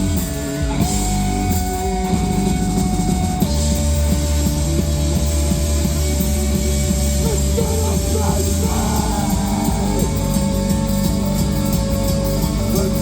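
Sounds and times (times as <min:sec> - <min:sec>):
live rock band: 0:00.0 - 0:13.0
voice gliding: 0:07.0 - 0:13.0.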